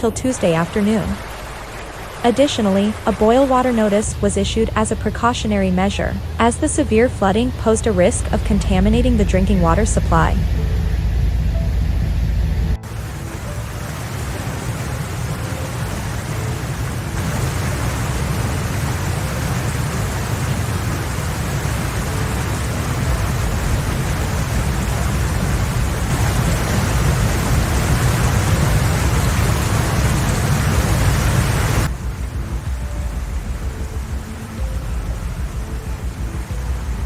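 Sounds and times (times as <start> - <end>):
heavy water rushing: 0.0 - 10.8, 12.8 - 37.0
low rumble: 2.8 - 14.0.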